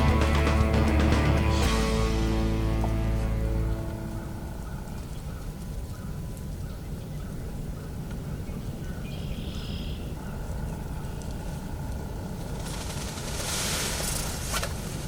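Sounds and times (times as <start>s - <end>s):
low outdoor rumble: 0.0s - 8.3s.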